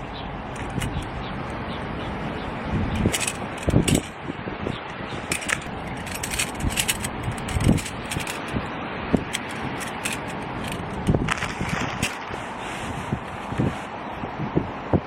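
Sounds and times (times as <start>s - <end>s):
steady rushing noise: 0.0s - 15.0s
camping gear knocks and clicks: 0.5s - 1.2s, 2.9s - 4.2s, 4.9s - 12.4s
crinkly rustles: 5.2s - 8.6s, 9.2s - 14.0s.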